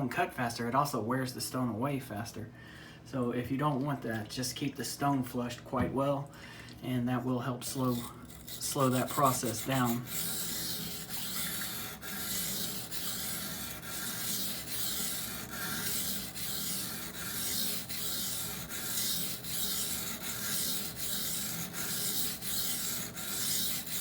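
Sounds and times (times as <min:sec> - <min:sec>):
knife scraping on whetstone: 0:07.6 - 0:24.0.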